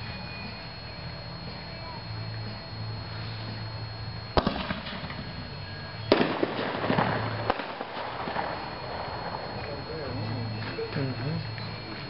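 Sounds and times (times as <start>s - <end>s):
firework shell bangs: 4.4s - 5.3s, 6.1s - 8.5s.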